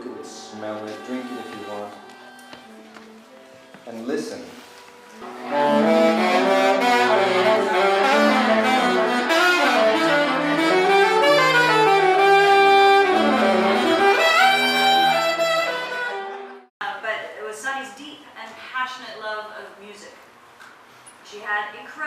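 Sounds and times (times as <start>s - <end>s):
instrumental music with sliding melodies: 0.0s - 16.7s.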